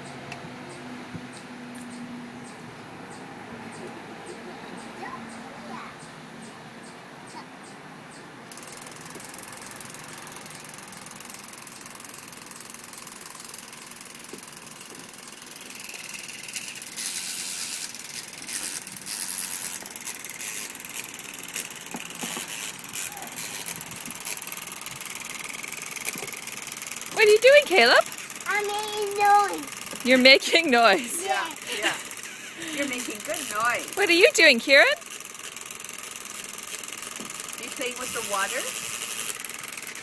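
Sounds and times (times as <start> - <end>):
toy motor and gears rattling: 8.5 - 40.0.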